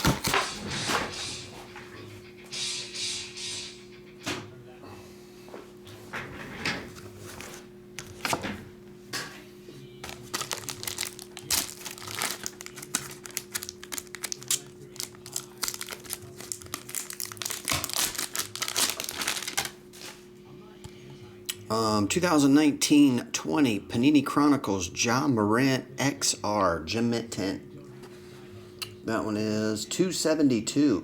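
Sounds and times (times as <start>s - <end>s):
plastic packaging clicking and crinkling: 10.0s - 20.2s.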